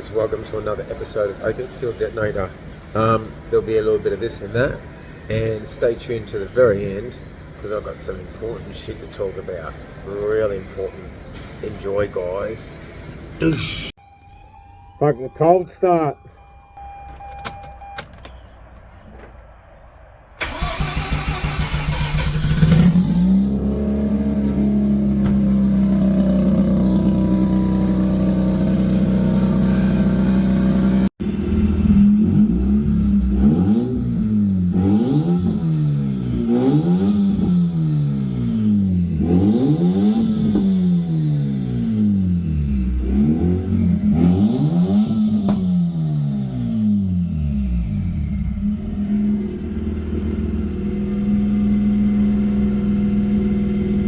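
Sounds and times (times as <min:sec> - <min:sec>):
starter motor cranking: 0:20.4 - 0:23.0
rotary engine idling and revving: 0:20.4 - 0:54.0.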